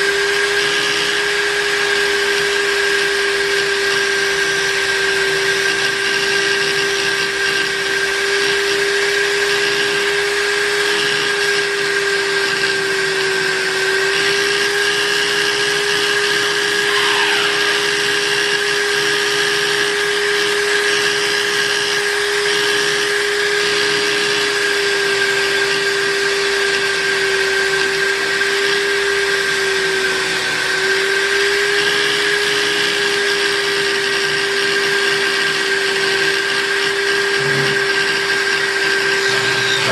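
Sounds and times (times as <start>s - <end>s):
buffing machine motor hum: 0.0s - 39.9s
brief falling squeal: 16.6s - 18.2s, 39.1s - 39.9s.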